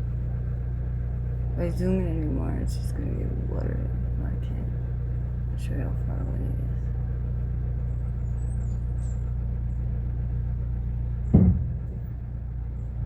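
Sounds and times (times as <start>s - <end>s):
low rumble: 0.0s - 13.0s
loud thump: 11.2s - 12.3s.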